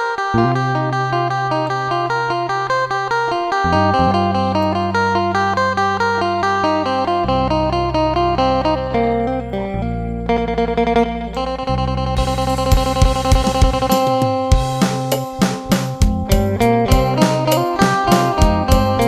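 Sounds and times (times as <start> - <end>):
plucked lute melody: 0.3 - 13.2
low drone notes: 3.3 - 6.8.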